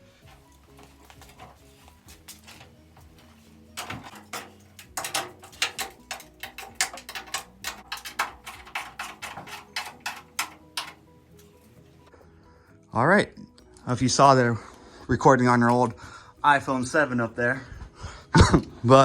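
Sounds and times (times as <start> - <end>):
sharp clicks and knocks on metal: 0.3 - 11.8.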